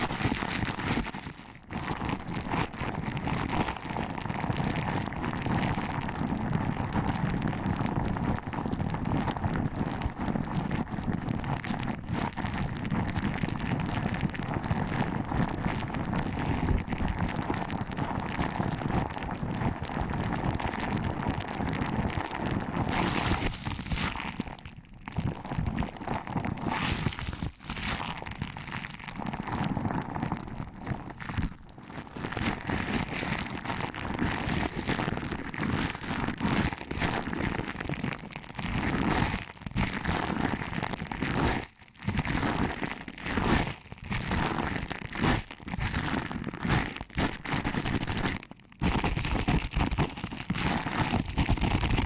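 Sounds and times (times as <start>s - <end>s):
fingers rubbing microphone: 0.0s - 2.0s, 22.2s - 24.6s, 25.3s - 31.6s, 32.2s - 33.8s.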